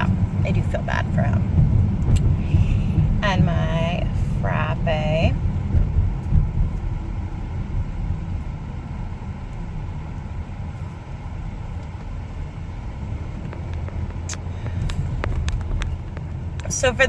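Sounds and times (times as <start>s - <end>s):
car cabin road and engine noise: 0.0s - 17.0s.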